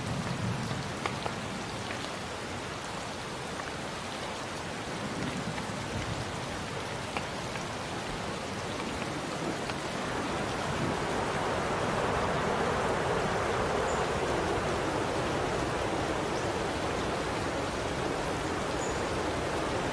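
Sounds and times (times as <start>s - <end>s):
raindrop ticks: 0.0s - 2.3s, 3.4s - 10.0s
steady rain falling: 0.0s - 19.9s.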